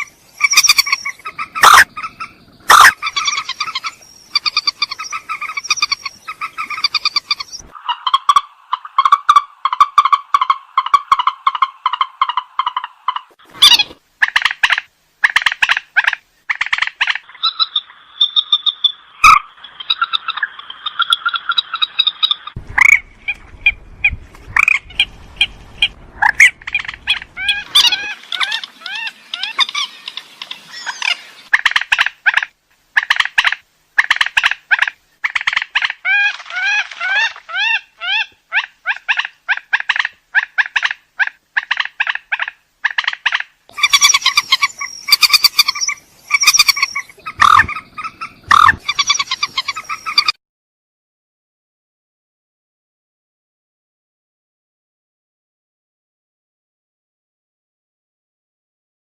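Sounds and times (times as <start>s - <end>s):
rail bird harsh calls: 0.0s - 23.8s, 24.6s - 32.4s, 41.6s - 50.4s.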